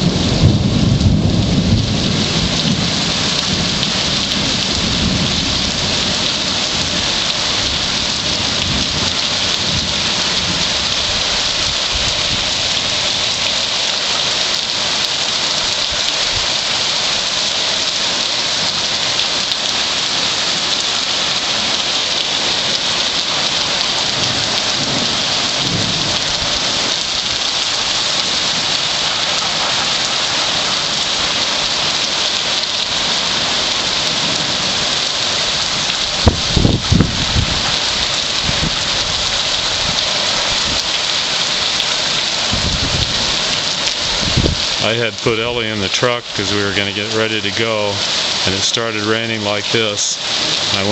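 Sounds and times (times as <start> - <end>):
torrential rain pouring: 0.0 - 50.9
low rumbles: 42.5 - 50.9.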